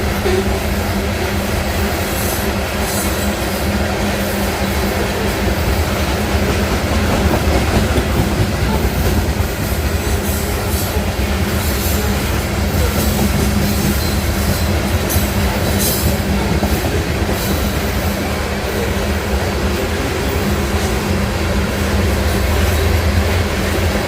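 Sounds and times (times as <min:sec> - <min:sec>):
train wheels rumbling on rails: 0:00.0 - 0:24.0.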